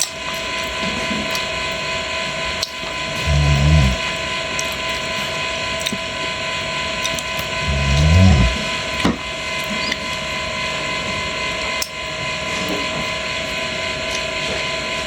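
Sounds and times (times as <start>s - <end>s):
short low sounds: 7.6s - 8.7s.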